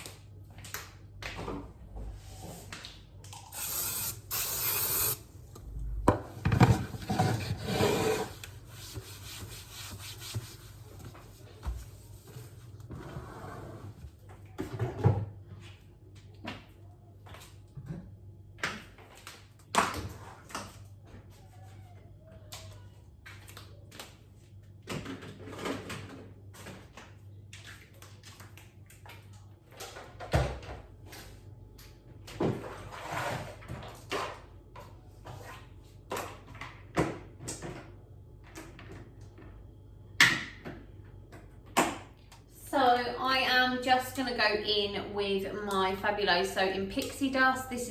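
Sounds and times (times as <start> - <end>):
knocks and clunks of objects: 5.6 - 7.6.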